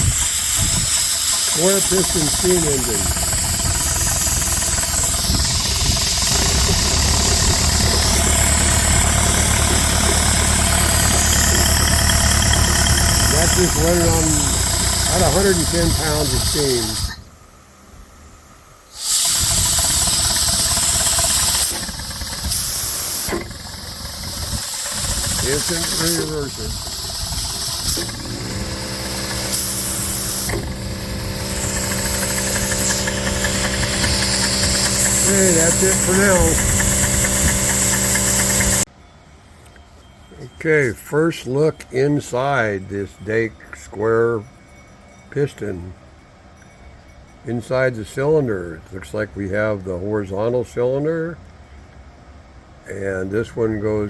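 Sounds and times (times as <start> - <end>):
steam engine chugging: 0.0 - 17.3, 18.9 - 38.9
steady hiss of air: 0.0 - 38.9.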